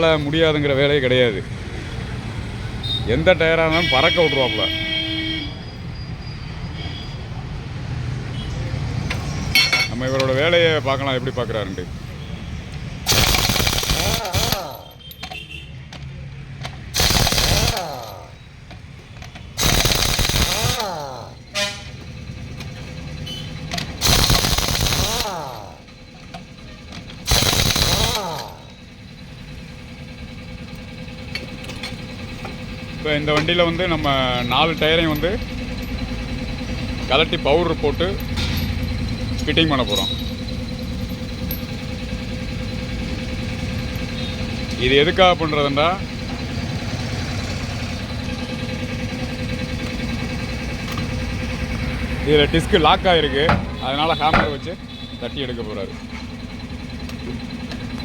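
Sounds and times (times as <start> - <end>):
impact wrench rattling: 9.1 - 10.6, 13.0 - 47.1
motor humming: 19.2 - 55.2.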